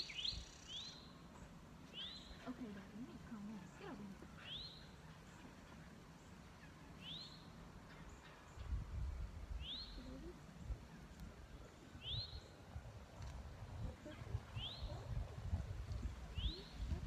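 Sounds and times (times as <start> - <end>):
bird chirping: 0.0 - 8.8, 9.5 - 12.6, 14.5 - 15.2, 16.1 - 17.0.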